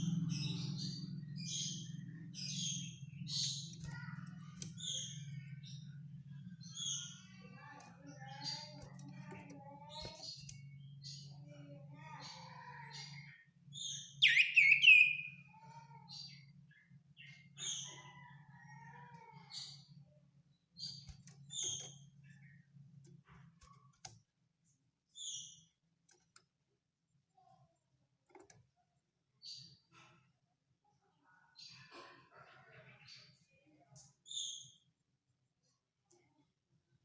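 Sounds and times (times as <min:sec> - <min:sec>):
bird whistling and chirping: 0:14.2 - 0:15.4.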